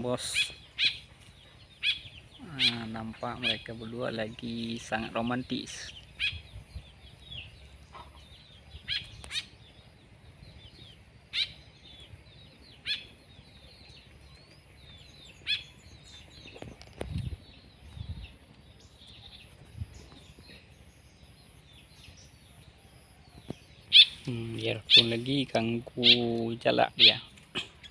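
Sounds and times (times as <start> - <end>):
birds twittering: 0.0 - 27.9
sharp short bird calls: 0.2 - 1.1, 1.8 - 3.8, 7.9 - 9.6, 11.3 - 11.6, 12.8 - 13.2, 15.4 - 15.8, 23.9 - 25.3.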